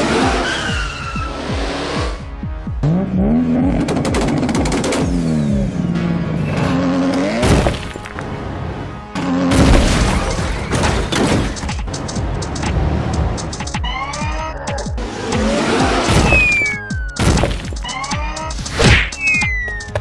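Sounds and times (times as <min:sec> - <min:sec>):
background music: 0:00.0 - 0:20.0
cartoon engine revving: 0:13.6 - 0:20.0.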